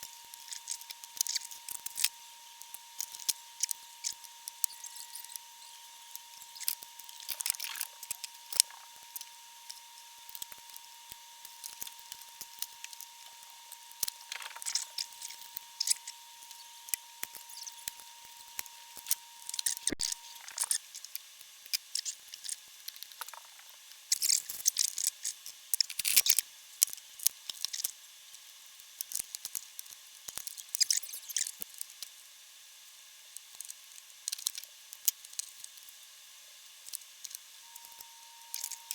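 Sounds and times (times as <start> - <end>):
faint steady high tone: 37.6 - 38.9.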